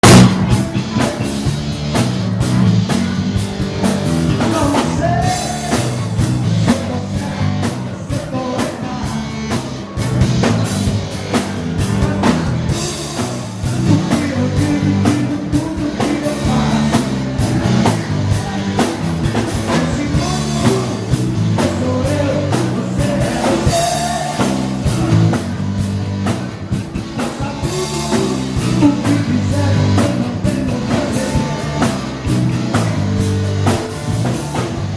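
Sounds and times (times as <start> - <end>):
dance band playing live: 0.0 - 34.9
drum kit beat: 0.0 - 34.9
person singing lead: 19.7 - 24.8, 27.2 - 32.0.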